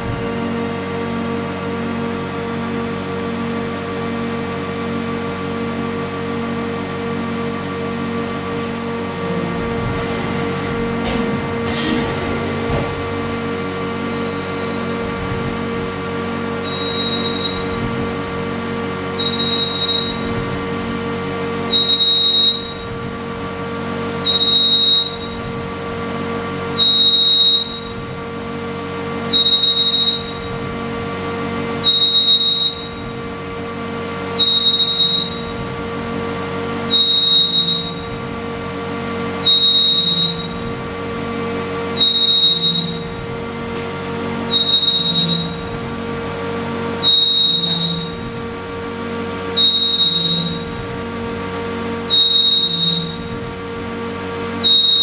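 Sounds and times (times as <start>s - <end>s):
steady machine hum: 0.0s - 55.0s
electronic warning beeps: 8.1s - 9.8s, 16.5s - 18.2s, 19.1s - 20.6s, 21.5s - 23.1s, 24.1s - 25.7s, 26.7s - 28.2s, 29.2s - 30.8s, 31.7s - 33.3s, 34.3s - 35.9s, 36.8s - 38.4s, 39.3s - 43.4s, 44.4s - 46.0s, 46.8s - 48.5s, 49.4s - 51.0s, 52.0s - 53.5s, 54.6s - 55.0s.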